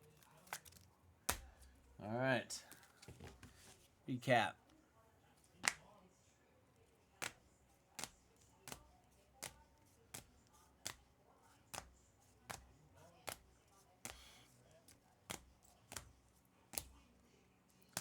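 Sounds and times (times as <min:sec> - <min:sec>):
cards set down on a table: 0:00.0 - 0:01.8, 0:02.6 - 0:03.8.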